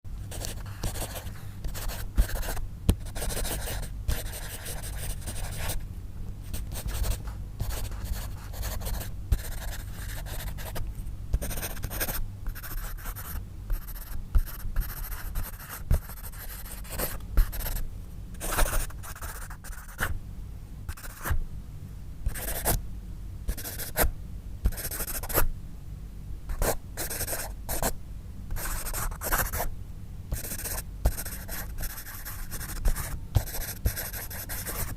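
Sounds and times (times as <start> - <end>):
pencil writing on paper: 0.3 - 5.8, 6.5 - 10.8, 11.4 - 17.8, 18.4 - 20.1, 26.6 - 27.9, 30.4 - 34.9.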